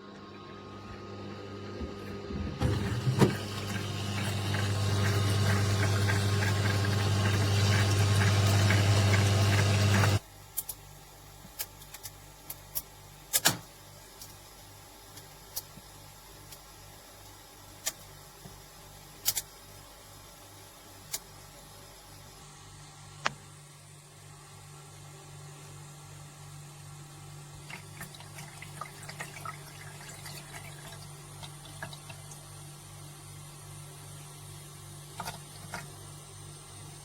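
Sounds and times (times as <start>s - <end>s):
ice maker humming: 0.0s - 10.2s, 27.5s - 33.6s, 35.0s - 37.0s.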